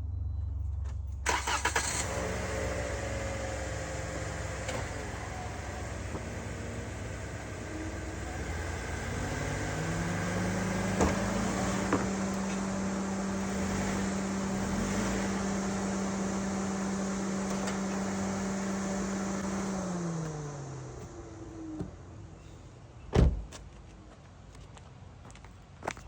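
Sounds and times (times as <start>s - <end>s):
car engine running: 0.0s - 22.4s
loud thump: 10.8s - 12.2s, 23.2s - 23.5s.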